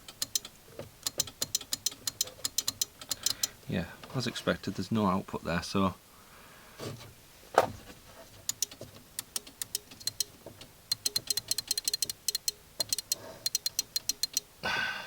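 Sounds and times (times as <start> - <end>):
rapid electrical clicking: 0.0 - 3.6, 8.4 - 14.6.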